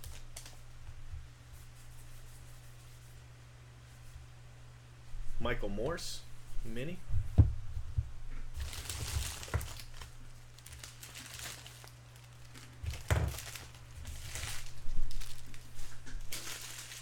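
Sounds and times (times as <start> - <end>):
card wrappers crinkling: 0.0 - 0.7, 8.5 - 17.0
low electrical hum: 0.0 - 17.0.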